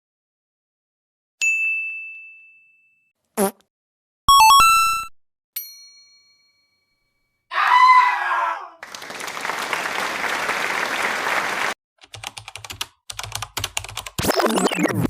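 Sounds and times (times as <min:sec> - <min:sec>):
computer keyboard typing clicks: 0:12.0 - 0:14.2.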